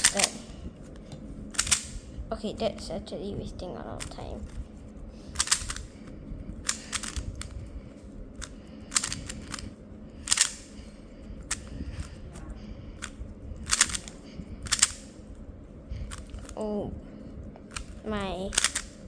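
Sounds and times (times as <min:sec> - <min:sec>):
puzzle cube clacking: 0:00.0 - 0:00.4, 0:05.3 - 0:06.0, 0:06.6 - 0:07.6, 0:08.4 - 0:10.8, 0:11.4 - 0:12.3, 0:13.0 - 0:15.2, 0:17.6 - 0:19.0.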